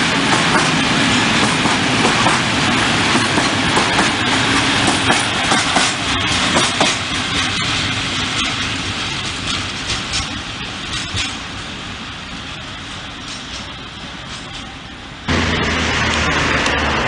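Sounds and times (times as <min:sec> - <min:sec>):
train wheels clicking over rails: 0:00.0 - 0:17.0.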